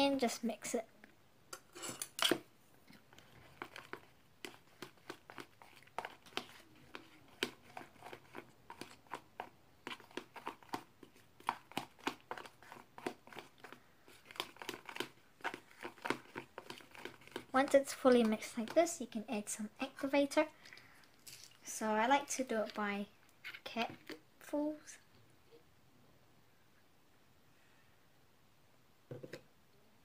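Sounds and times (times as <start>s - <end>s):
utensil stirring and scraping container: 1.6s - 24.2s.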